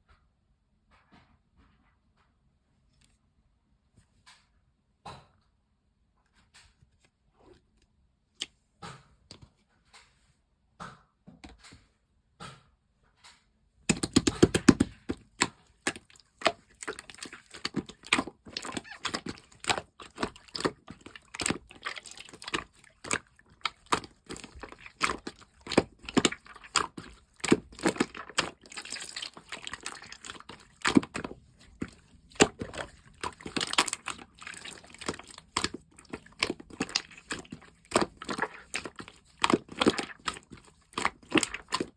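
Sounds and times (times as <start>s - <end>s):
slime clicking and crackling: 13.9s - 41.9s.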